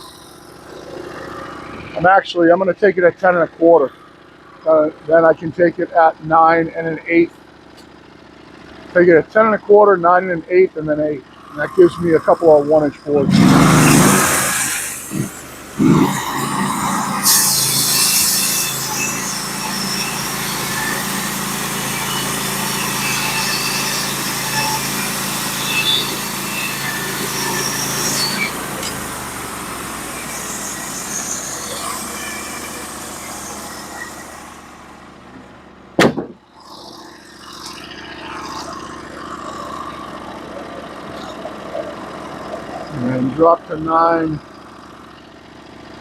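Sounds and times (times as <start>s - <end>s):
sawmill engine running: 0.0s - 46.0s
blade cutting log hiss: 13.2s - 34.9s.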